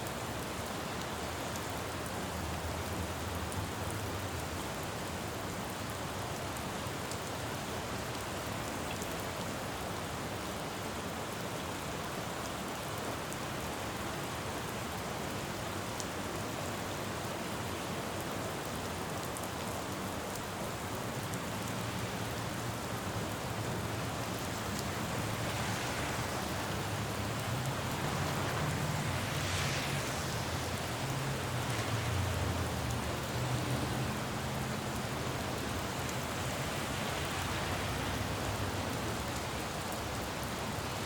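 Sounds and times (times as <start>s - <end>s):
rain falling on a road: 0.0s - 41.0s
wet tyre hiss: 24.8s - 32.8s.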